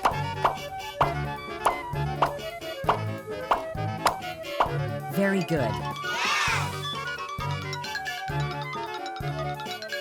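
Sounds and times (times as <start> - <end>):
upbeat keyboard music with beat: 0.0 - 5.1.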